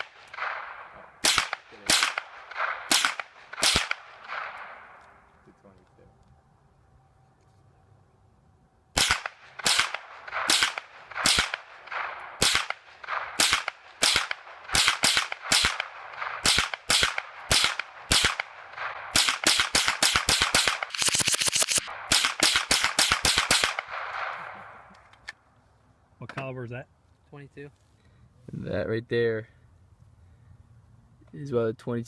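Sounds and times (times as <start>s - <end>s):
rifle shots: 0.0s - 5.0s, 9.0s - 24.8s.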